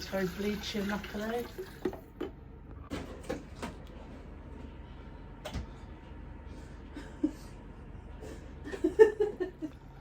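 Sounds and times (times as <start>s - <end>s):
electric kettle humming: 0.0s - 2.6s.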